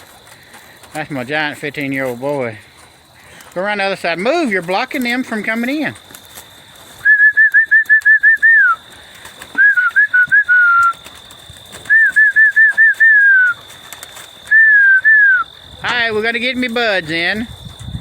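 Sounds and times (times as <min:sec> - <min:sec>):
person whistling chirping notes: 0:07.0 - 0:08.8, 0:09.6 - 0:11.0, 0:11.9 - 0:13.6, 0:14.5 - 0:15.5.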